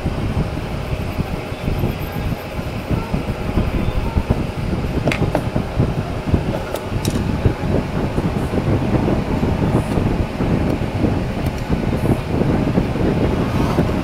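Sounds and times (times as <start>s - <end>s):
low mechanical rumble: 0.0s - 14.0s.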